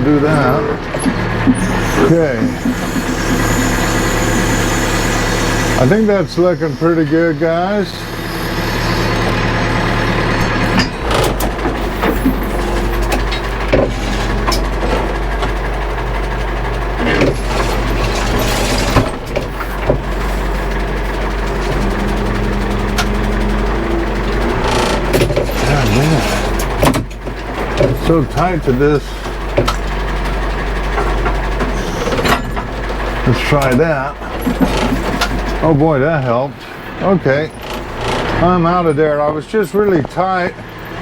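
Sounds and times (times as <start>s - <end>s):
machine knocks and clatter: 0.0s - 5.8s, 9.2s - 35.8s
backhoe engine running: 0.0s - 41.0s.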